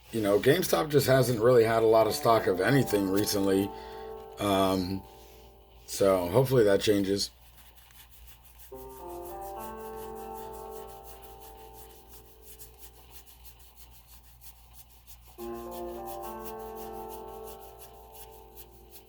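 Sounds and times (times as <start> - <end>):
rolled keyboard chord: 0.3 - 6.4, 8.6 - 19.0
ticking beat: 0.6 - 6.1, 8.7 - 13.8, 15.3 - 19.0.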